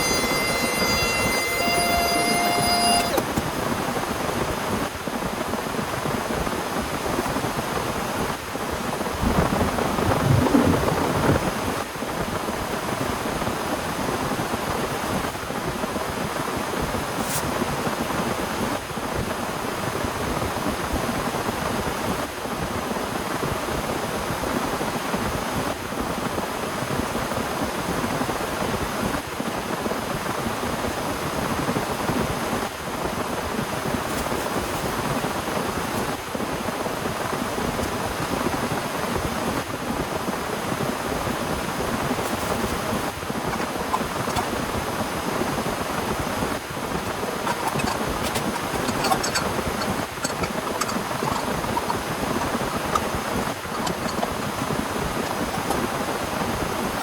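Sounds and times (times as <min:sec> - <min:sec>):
thunder rumble: 0:09.2 - 0:11.7.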